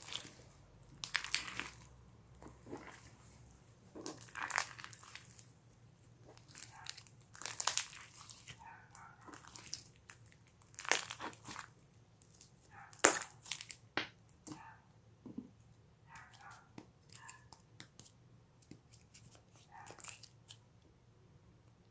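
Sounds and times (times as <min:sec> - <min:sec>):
slime crackling and popping: 0:00.0 - 0:03.2, 0:04.0 - 0:05.5, 0:06.3 - 0:13.8.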